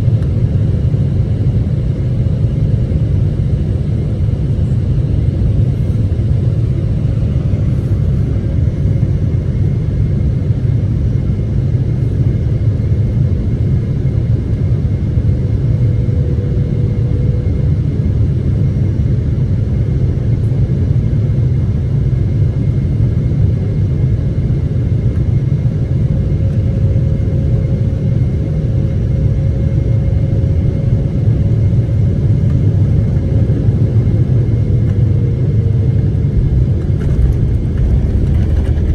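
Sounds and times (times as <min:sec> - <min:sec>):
airplane engines low rumble: 0:00.0 - 0:38.9
faint engine tone: 0:36.2 - 0:38.9.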